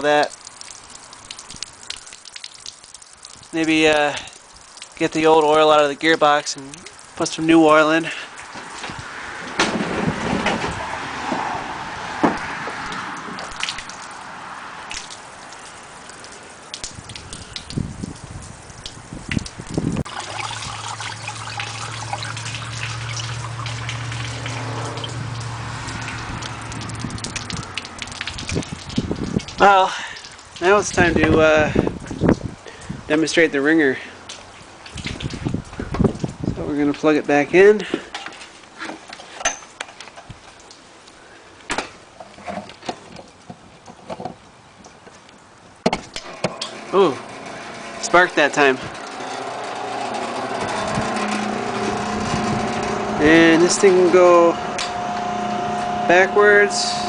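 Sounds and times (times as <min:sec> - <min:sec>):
water trickling and dripping: 0:00.0 - 0:57.0
steady low hum: 0:47.2 - 0:57.0.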